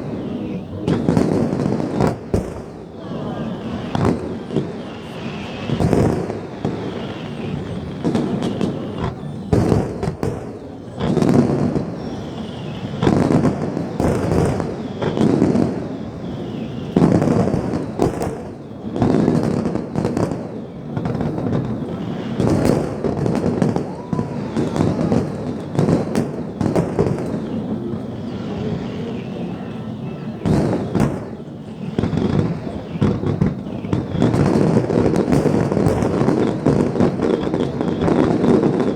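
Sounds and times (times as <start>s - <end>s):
fireworks booming: 0.0s - 38.9s.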